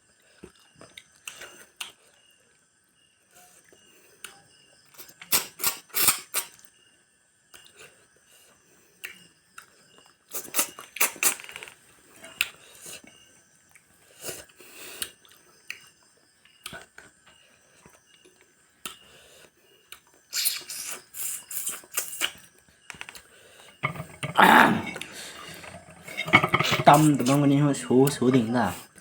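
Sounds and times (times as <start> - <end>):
chewing and crunching: 0.3 - 2.3, 7.5 - 29.0
cutlery and dishes clicking: 23.8 - 27.4.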